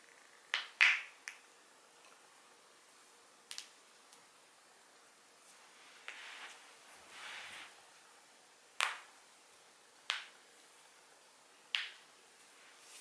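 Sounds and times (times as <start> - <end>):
soft rustle of movement: 5.4 - 8.0, 12.3 - 13.0.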